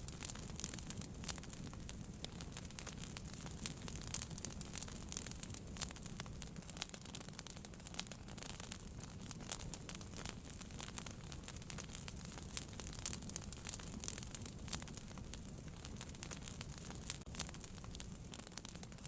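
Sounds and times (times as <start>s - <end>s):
fire flames rumbling: 0.0s - 19.0s
logs crackling and popping: 0.0s - 19.0s.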